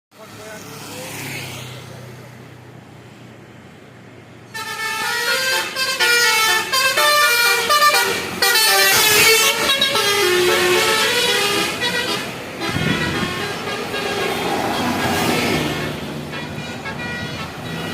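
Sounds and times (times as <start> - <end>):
musical bus horn tune: 4.5 - 17.9.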